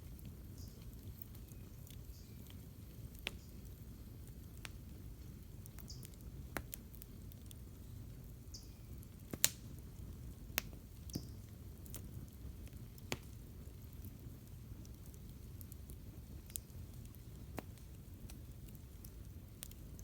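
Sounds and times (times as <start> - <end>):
campfire wood crackling and popping: 0.0 - 20.0.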